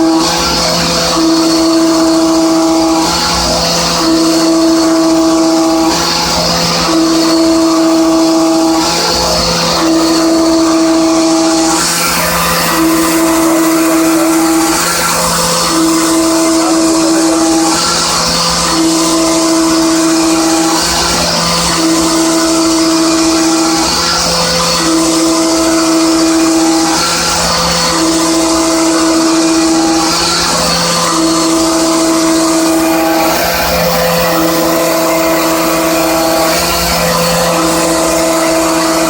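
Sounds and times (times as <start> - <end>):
pitched cutting tone: 9.8 - 39.0
milling machine spindle running: 10.0 - 39.0.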